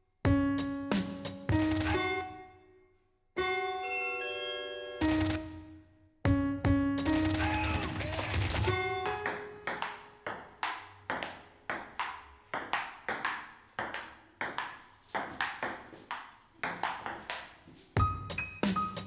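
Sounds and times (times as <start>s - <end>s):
sharp clicking sampler hits: 1.0s - 2.2s, 5.0s - 5.6s, 7.1s - 8.8s.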